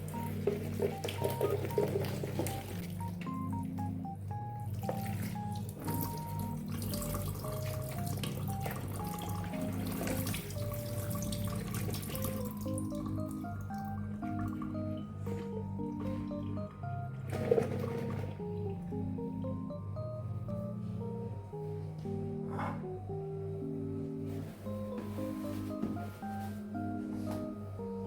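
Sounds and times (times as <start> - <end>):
light melody with bass line: 0.0 - 28.0
water running from a tap: 4.7 - 15.0.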